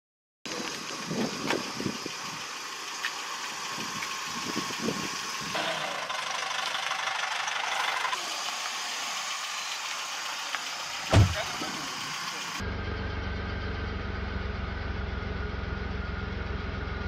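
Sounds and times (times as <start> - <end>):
vehicle engine idling: 0.5 - 17.0
hiss: 8.2 - 12.6.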